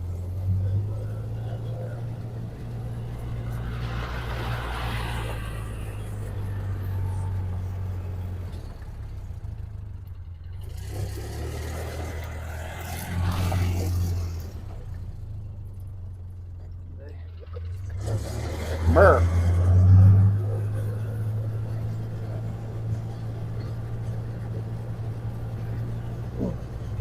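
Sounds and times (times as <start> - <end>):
farm vehicle engine droning: 0.0 - 27.0.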